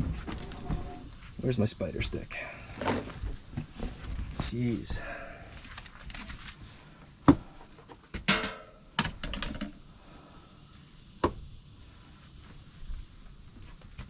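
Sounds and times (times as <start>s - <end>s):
sharp knocks and clatters: 8.1s - 9.8s.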